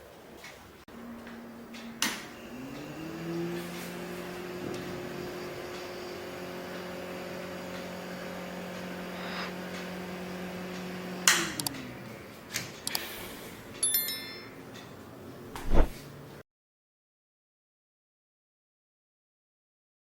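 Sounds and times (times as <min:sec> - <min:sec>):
table fan humming: 0:00.9 - 0:16.4
fan switch click: 0:11.2 - 0:11.9.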